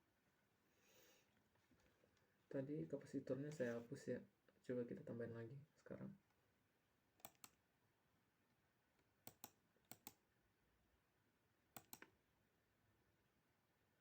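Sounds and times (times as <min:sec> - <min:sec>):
computer mouse double-clicks: 0:07.2 - 0:07.6, 0:09.2 - 0:10.2, 0:11.8 - 0:12.1.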